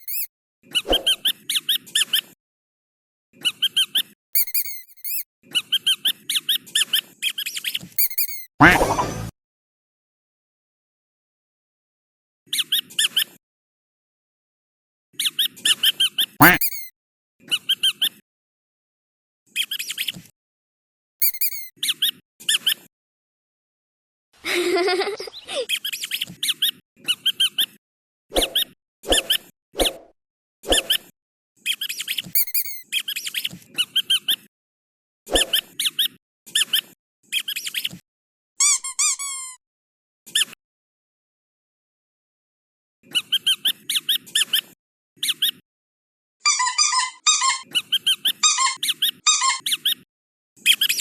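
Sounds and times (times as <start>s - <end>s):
squeaky dog toy squeaking: 0.0s - 0.3s, 4.4s - 5.2s, 8.0s - 9.0s, 16.4s - 16.9s, 21.2s - 21.7s, 32.4s - 32.8s, 38.6s - 39.6s, 46.4s - 50.0s
harsh squeal of toy: 4.4s - 5.2s, 8.0s - 9.3s, 16.4s - 16.9s, 21.2s - 21.7s, 32.4s - 32.8s, 38.6s - 39.6s, 46.4s - 50.0s.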